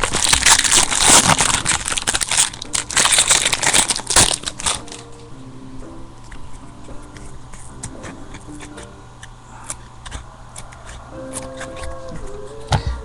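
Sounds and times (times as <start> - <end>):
foil wrappers crinkling and tearing: 0.0 - 5.3.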